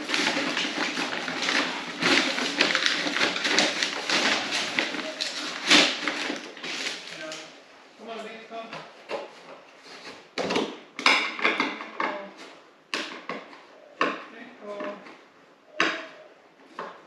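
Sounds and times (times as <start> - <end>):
hard objects knocking: 0.0 - 7.1, 10.4 - 12.3, 12.9 - 15.1.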